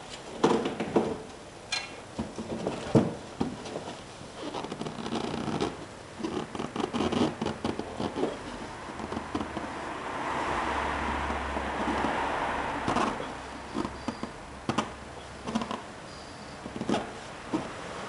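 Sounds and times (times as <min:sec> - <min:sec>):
fan-like hum: 0:00.0 - 0:18.0
scraping on plastic bumper: 0:02.2 - 0:09.8, 0:16.6 - 0:17.8.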